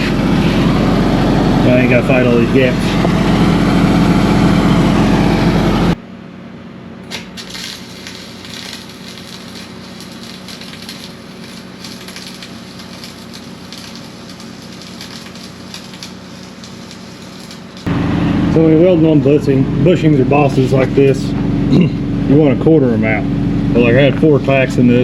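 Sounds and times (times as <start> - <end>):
welding arc crackling: 0.0 - 6.0, 7.0 - 19.0
loud machine hum: 0.0 - 25.0.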